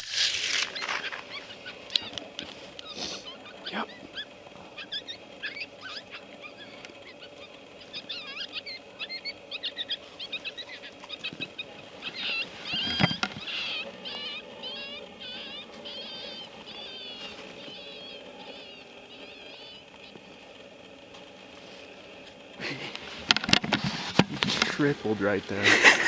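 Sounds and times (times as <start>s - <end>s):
sharp cracks: 0.0s - 4.3s
coyotes yipping and howling: 0.6s - 26.0s.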